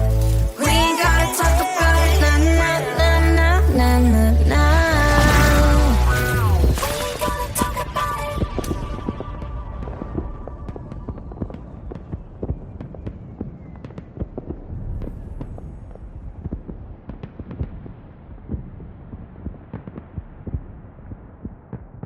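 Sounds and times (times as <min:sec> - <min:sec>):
sharp pops and crackles: 0:05.0 - 0:22.0
dense low rumble: 0:14.4 - 0:21.5.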